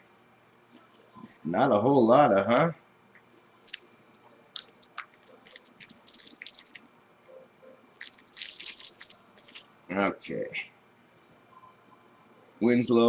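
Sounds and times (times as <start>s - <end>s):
foil wrapper tearing and crinkling: 3.6s - 6.8s, 8.0s - 9.6s.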